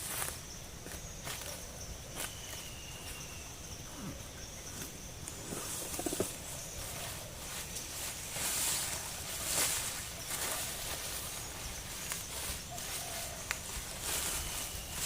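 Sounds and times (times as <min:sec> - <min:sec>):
high insect trill: 0:00.0 - 0:15.0
rustles and knocks: 0:04.8 - 0:06.5.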